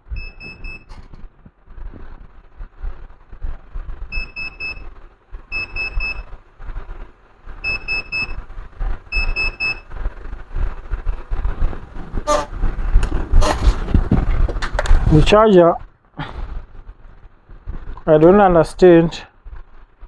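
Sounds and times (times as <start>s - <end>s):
low rumbling background noise: 0.0s - 20.0s
high short electronic beeps: 0.1s - 0.9s, 7.6s - 8.4s, 9.1s - 9.8s.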